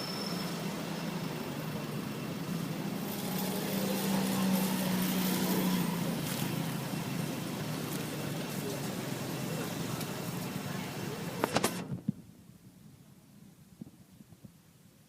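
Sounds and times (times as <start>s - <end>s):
vehicle engine running: 0.0s - 12.7s.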